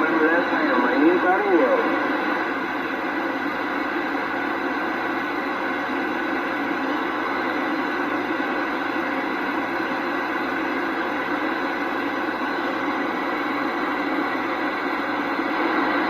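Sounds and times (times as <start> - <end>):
radio static hiss: 0.0 - 2.9.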